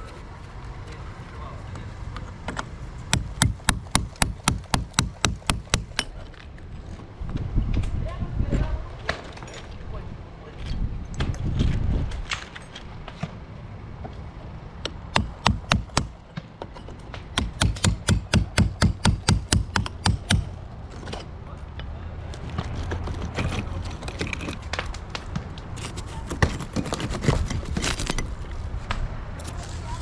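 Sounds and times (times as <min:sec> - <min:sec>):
hammer striking brickwork: 0:03.1 - 0:06.4, 0:14.8 - 0:21.3, 0:22.6 - 0:28.3.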